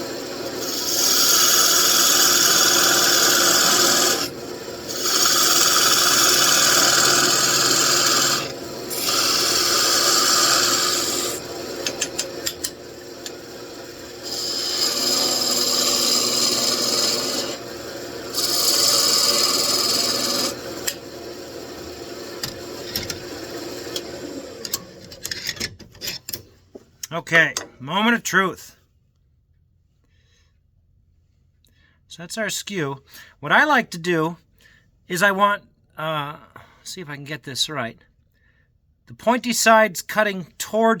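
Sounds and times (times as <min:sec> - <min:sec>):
wood lathe running: 0:00.0 - 0:24.9
turning tool cutting wood: 0:00.0 - 0:25.3.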